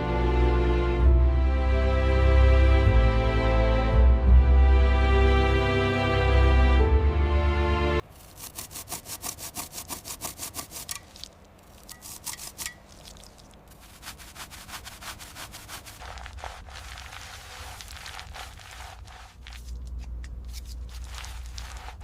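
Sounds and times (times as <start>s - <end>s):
background music: 0.0s - 8.0s
rapid rubbing strokes: 8.0s - 13.1s, 13.7s - 22.0s.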